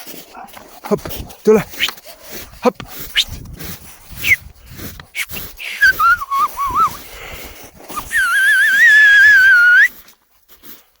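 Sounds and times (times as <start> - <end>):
dog whining: 5.8 - 7.0, 7.9 - 9.9.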